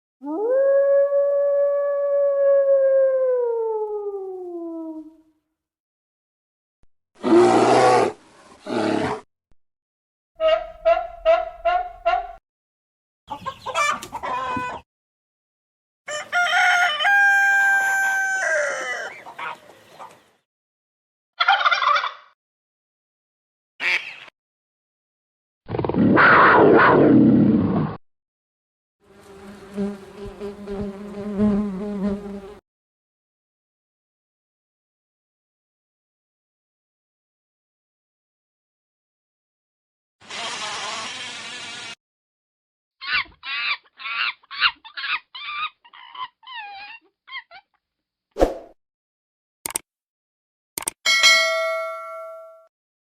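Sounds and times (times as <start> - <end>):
insect buzzing: 29.1 - 32.6.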